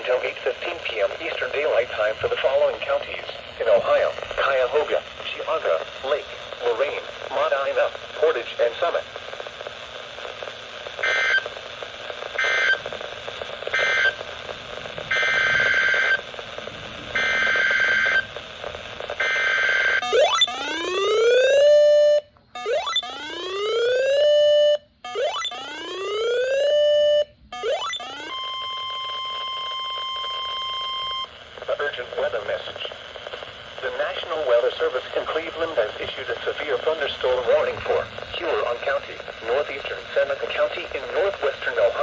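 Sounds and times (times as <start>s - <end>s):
radio static: 0.0s - 21.6s, 27.7s - 42.0s
steady alarm tone: 15.1s - 16.2s, 17.1s - 18.3s, 19.2s - 31.3s
whooping alarm sweeps: 19.2s - 31.3s.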